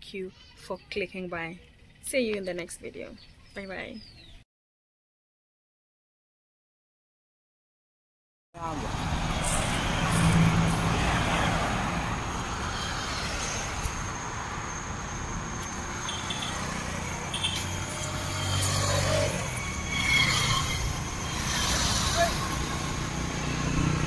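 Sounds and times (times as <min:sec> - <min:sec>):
traffic background noise: 0:00.0 - 0:04.4, 0:08.6 - 0:24.0
engine running low hum: 0:08.6 - 0:24.0.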